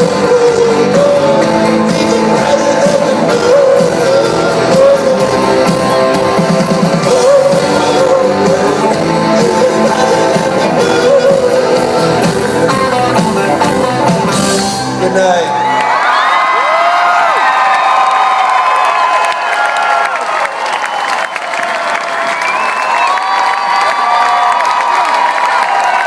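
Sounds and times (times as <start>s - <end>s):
person singing: 0.0s - 15.2s
rock band playing: 0.0s - 15.8s.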